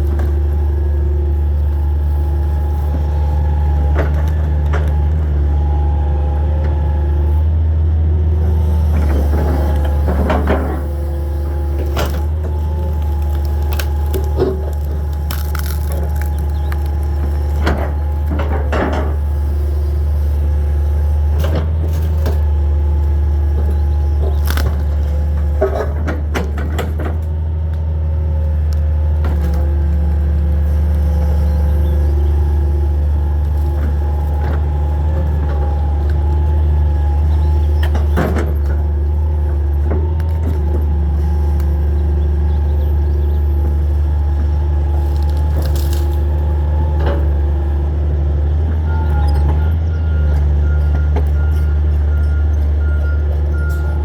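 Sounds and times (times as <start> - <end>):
excavator diesel engine running: 0.0 - 54.0
wood cracking and snapping: 11.8 - 18.8, 24.2 - 25.8, 45.0 - 46.6.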